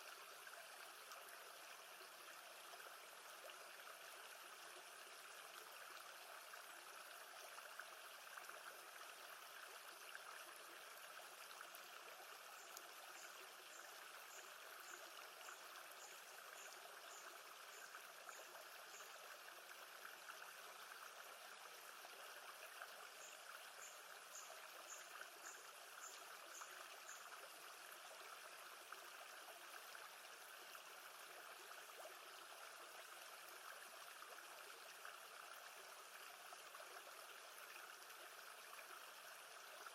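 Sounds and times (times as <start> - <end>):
calm lake water: 0.0 - 39.9.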